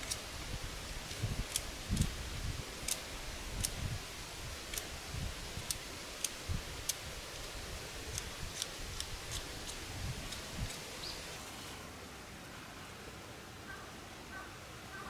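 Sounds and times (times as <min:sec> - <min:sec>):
campfire crackling: 0:00.0 - 0:11.9
low hiss of fire: 0:00.0 - 0:13.0.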